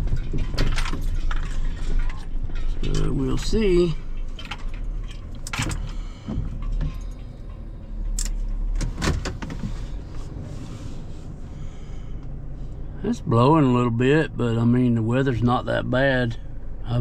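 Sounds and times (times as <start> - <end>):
knocks and clicks of movement: 0.0 - 10.4.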